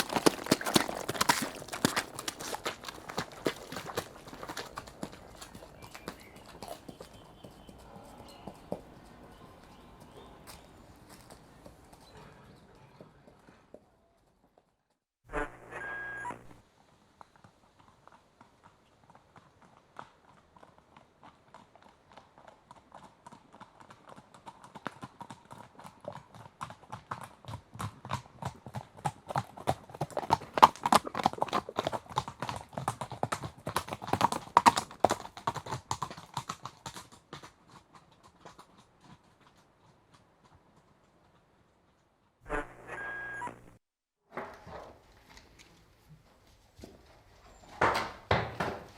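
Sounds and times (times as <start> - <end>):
horse hooves clip-clopping: 0.0 - 14.7, 15.3 - 43.7, 44.4 - 48.9
short pitched sound: 15.3 - 16.6, 42.5 - 43.8.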